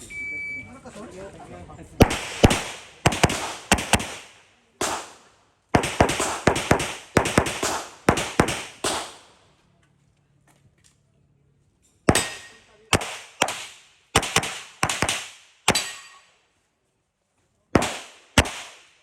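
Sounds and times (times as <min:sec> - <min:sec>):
pistol shots echoing: 0:02.0 - 0:09.4, 0:12.1 - 0:16.2, 0:17.8 - 0:19.0.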